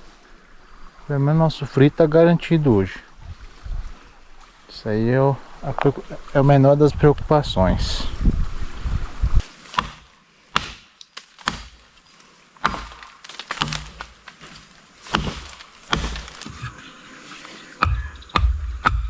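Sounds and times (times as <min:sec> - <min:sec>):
paddle knocking on wooden canoe: 0:15.1 - 0:16.8, 0:17.8 - 0:19.0.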